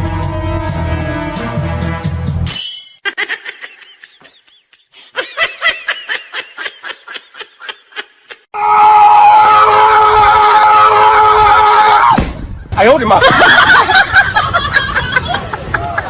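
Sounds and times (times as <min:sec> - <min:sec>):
person laughing in quick bursts: 0:03.0 - 0:08.5.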